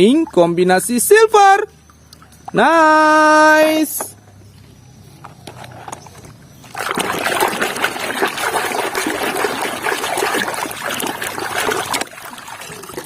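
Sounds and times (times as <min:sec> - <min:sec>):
water trickling and splashing: 0:06.6 - 0:13.0.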